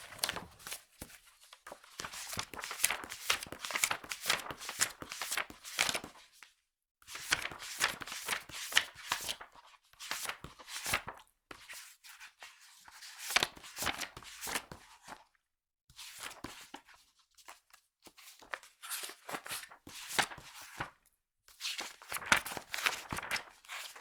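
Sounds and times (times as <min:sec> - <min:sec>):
magazine pages flipping: 0:00.0 - 0:06.0, 0:22.0 - 0:24.0.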